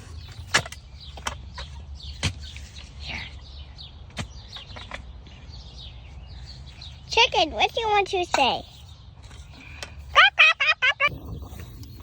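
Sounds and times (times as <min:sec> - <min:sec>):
chickens clucking and chirping: 0:07.6 - 0:12.0.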